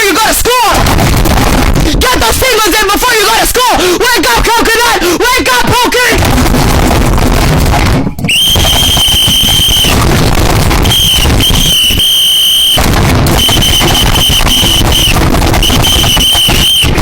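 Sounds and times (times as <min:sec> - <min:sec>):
loud dense rumble: 0:00.8 - 0:02.4, 0:06.1 - 0:17.0.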